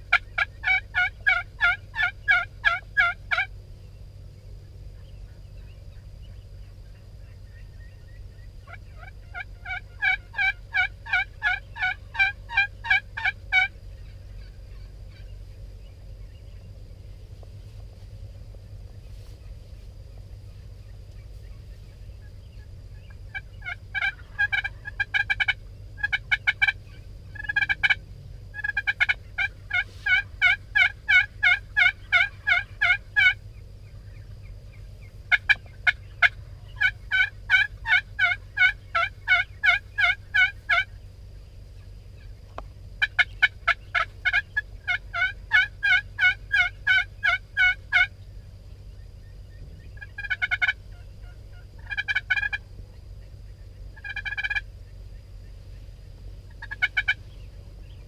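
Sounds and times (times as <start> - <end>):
turkey yelping: 0.0 - 3.5, 7.3 - 15.4, 21.4 - 33.4, 35.3 - 41.0, 43.0 - 48.2, 49.9 - 52.7, 53.9 - 54.7, 56.5 - 57.5.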